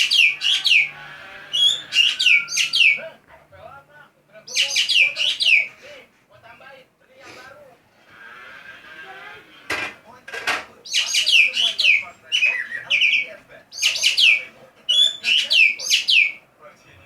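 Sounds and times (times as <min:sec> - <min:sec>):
magpie calling: 0:00.0 - 0:03.2, 0:04.5 - 0:05.8, 0:10.8 - 0:16.4.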